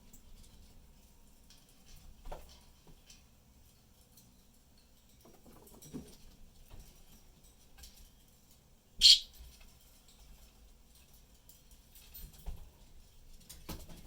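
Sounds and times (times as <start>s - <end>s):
budgerigar chirp: 9.0s - 9.3s.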